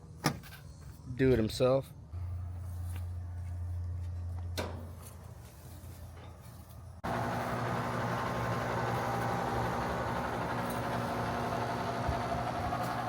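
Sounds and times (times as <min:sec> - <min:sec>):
air conditioner unit humming: 0:07.0 - 0:13.0.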